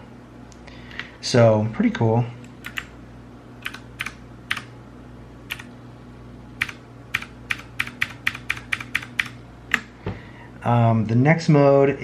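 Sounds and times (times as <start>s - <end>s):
mechanical keyboard keystrokes: 2.6s - 2.9s, 3.6s - 4.7s, 5.5s - 5.7s, 6.6s - 9.8s.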